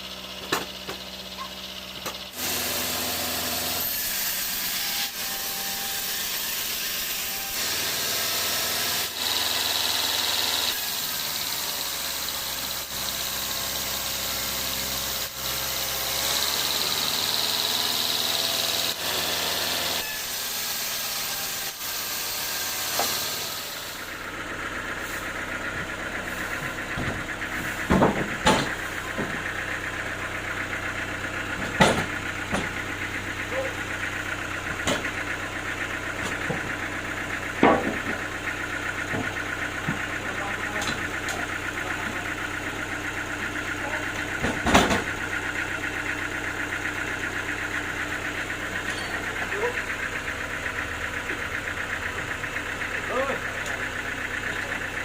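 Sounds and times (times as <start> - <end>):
sawmill engine drone: 0.0 - 55.0
saw noise: 0.5 - 30.4.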